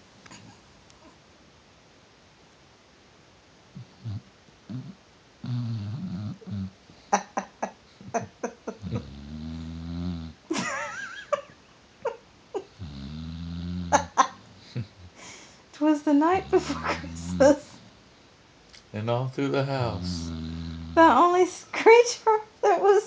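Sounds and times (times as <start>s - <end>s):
dog snoring: 3.7s - 6.8s, 8.1s - 10.5s, 12.6s - 15.1s, 16.2s - 17.9s, 19.5s - 21.4s.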